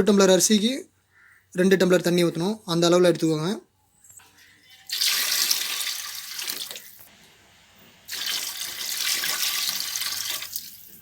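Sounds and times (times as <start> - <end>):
water pouring into a pot: 4.6 - 7.0, 8.1 - 11.0.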